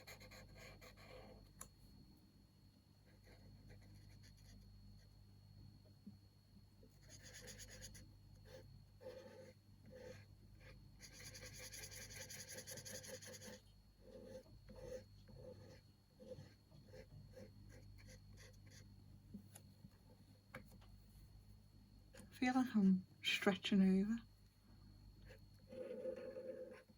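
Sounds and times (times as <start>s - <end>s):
pen scratching on paper: 0.0s - 1.4s, 3.1s - 4.6s, 6.9s - 18.9s, 25.2s - 26.9s.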